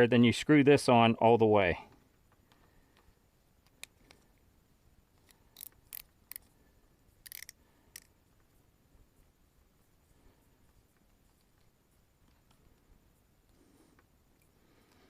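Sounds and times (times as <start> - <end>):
plastic clicks and scrapes: 7.2 - 8.1.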